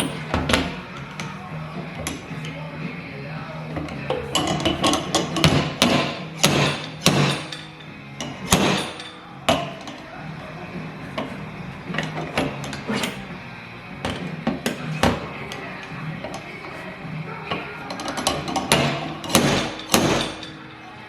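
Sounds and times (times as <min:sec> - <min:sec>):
hammer striking sheet metal: 0:04.4 - 0:09.9, 0:17.9 - 0:20.6.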